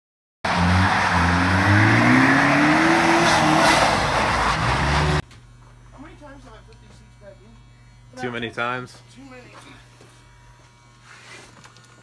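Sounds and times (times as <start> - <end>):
car engine accelerating: 0.5 - 5.2.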